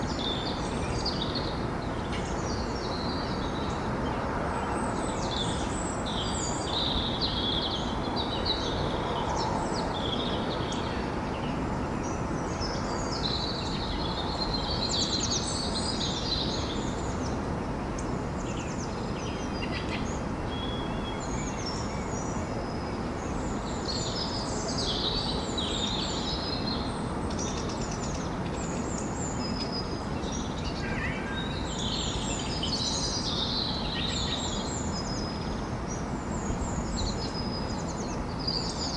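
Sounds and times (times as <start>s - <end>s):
birds chirping and trilling: 18.0s - 38.9s.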